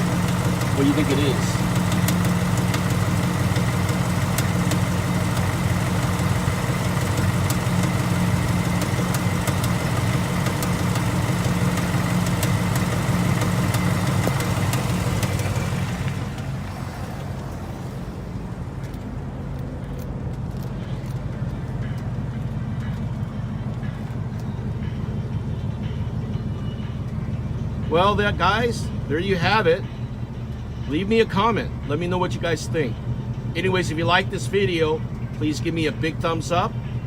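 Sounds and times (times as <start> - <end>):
light engine knocking: 0.0 - 16.5
car engine idling: 0.0 - 37.0.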